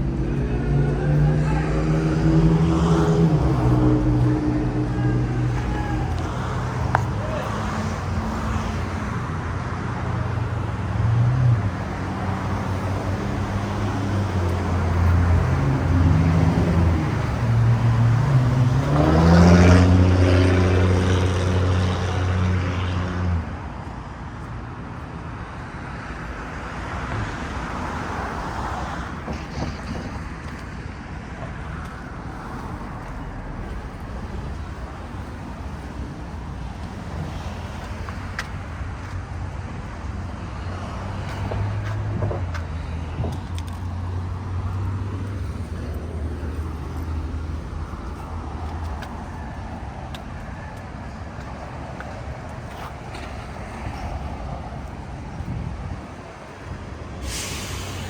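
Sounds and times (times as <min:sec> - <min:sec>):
vehicle engine accelerating: 0:00.0 - 0:09.4, 0:10.2 - 0:23.6
street traffic: 0:00.0 - 0:58.0.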